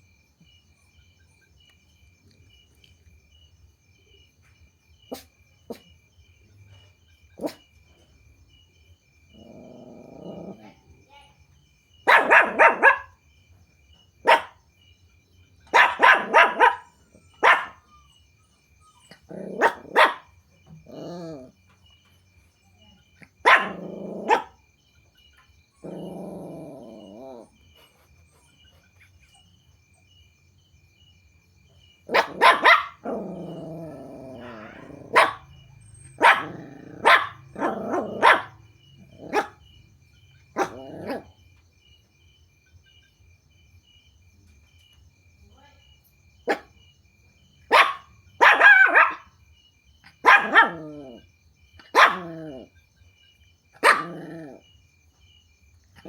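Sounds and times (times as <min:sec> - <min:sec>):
puppies barking: 0:12.1 - 0:13.1, 0:15.7 - 0:18.0, 0:18.8 - 0:20.3, 0:23.4 - 0:24.6, 0:32.1 - 0:39.6, 0:40.6 - 0:41.3, 0:47.7 - 0:49.3, 0:50.2 - 0:51.2, 0:51.9 - 0:52.7, 0:53.8 - 0:54.6.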